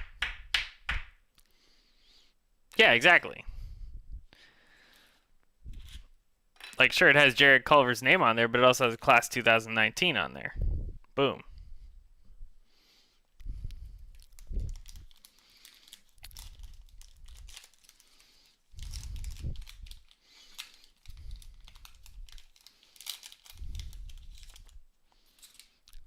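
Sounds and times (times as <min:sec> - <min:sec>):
foil wrapper crinkling and tearing: 0:14.1 - 0:26.0
cards rustling: 0:14.2 - 0:26.0.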